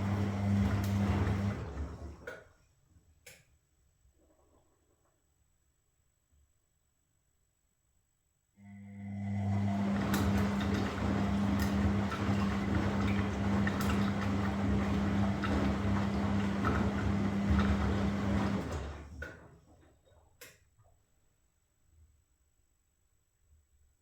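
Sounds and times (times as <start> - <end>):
water rushing in washing machine: 0.0 - 2.5, 8.8 - 20.2.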